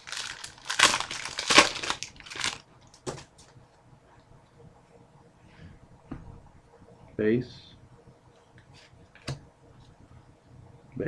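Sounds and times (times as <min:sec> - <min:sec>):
wrapper crinkling and tearing: 0:00.0 - 0:03.0.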